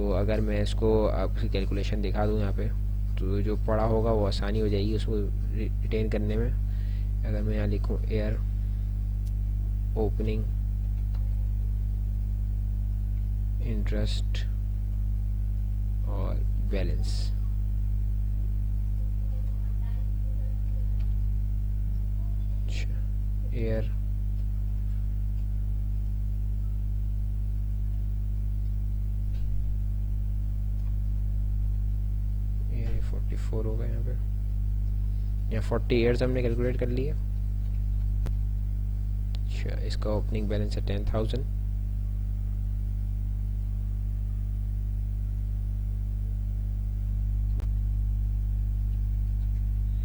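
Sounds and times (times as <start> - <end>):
electrical hum: 0.0 - 50.0
click: 47.4 - 47.8.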